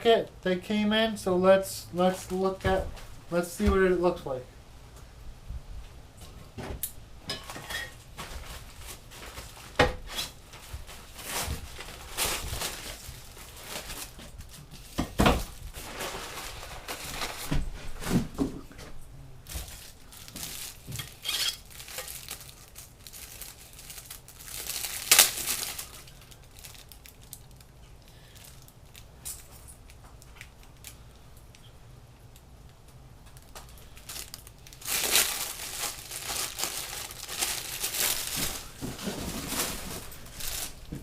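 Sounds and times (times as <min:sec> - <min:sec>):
paper and plastic crinkling: 0:07.5 - 0:18.4, 0:19.4 - 0:31.0, 0:33.3 - 0:41.0.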